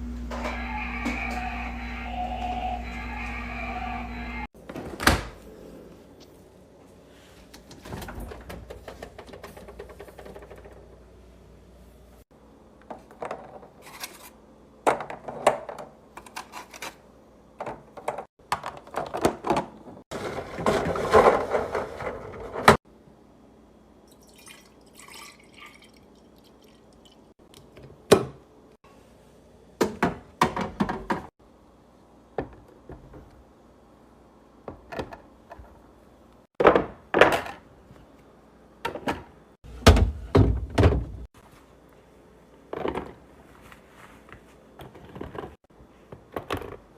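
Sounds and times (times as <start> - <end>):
food containers clattering in fridge: 17.6 - 22.8.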